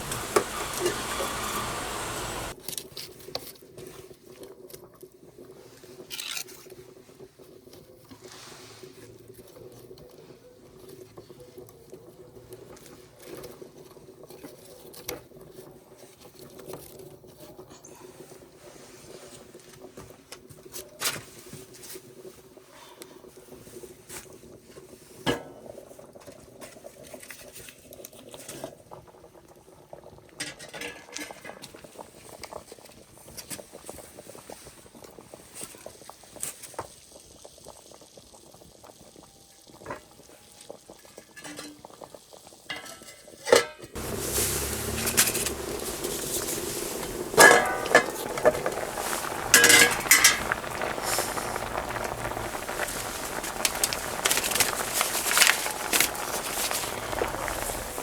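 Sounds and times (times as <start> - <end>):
pots and utensils clinking: 0.0 - 2.6, 30.4 - 31.7, 42.7 - 58.0
pot boiling: 0.0 - 58.0.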